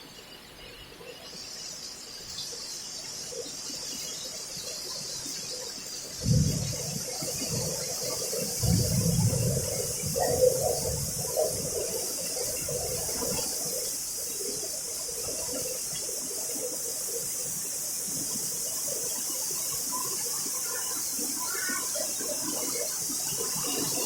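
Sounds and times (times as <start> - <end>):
heavy rain falling: 6.2 - 12.1.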